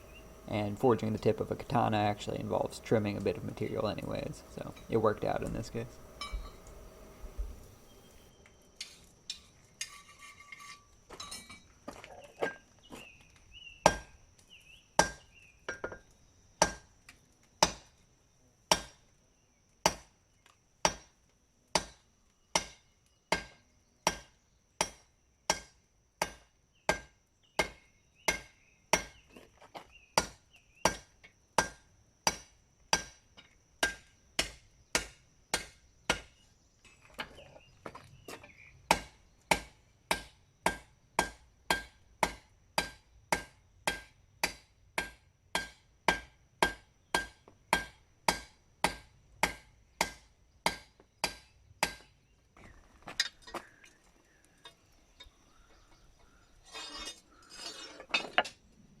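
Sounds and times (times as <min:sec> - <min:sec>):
faint high whine: 0:00.0 - 0:12.6
hammer striking metal on anvil: 0:04.7 - 0:06.7, 0:38.9 - 0:52.0.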